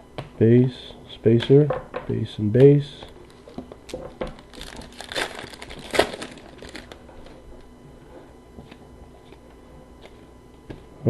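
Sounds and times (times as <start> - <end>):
plastic wrapper crinkling: 3.1 - 7.4.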